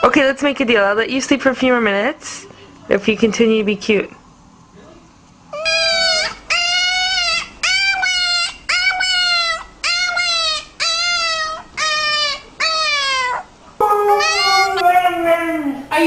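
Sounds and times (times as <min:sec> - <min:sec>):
dog whining: 0:05.5 - 0:14.9.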